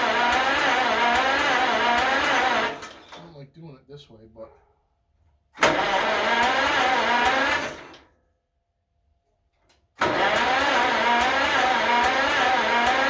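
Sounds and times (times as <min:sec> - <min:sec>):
tractor engine cranking on starter: 0:00.0 - 0:03.4, 0:05.6 - 0:08.2, 0:09.7 - 0:13.0.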